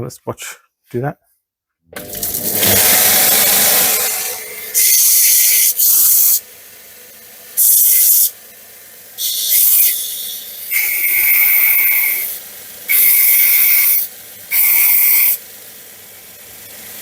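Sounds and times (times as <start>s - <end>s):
belt grinder grinding metal: 2.0s - 6.5s, 7.4s - 8.4s, 9.2s - 17.0s
grinder belt running: 2.0s - 17.0s.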